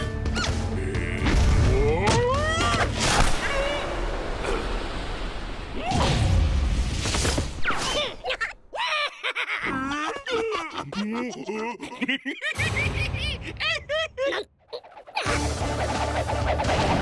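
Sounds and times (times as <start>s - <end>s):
cartoon character grunts: 13.4s - 15.4s.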